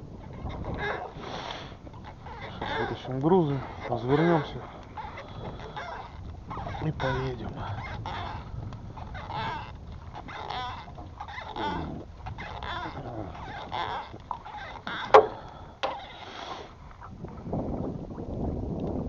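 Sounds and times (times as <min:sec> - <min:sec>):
steady wind: 0:00.0 - 0:19.0
water noise: 0:00.0 - 0:19.0
short pitched squeaks: 0:12.4 - 0:16.7
sharp knocks: 0:15.1 - 0:16.0.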